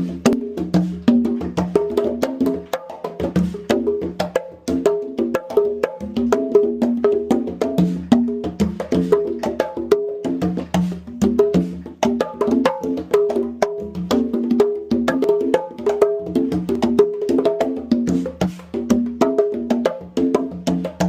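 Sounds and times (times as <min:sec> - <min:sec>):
conga drums played by hand: 0:00.0 - 0:21.0.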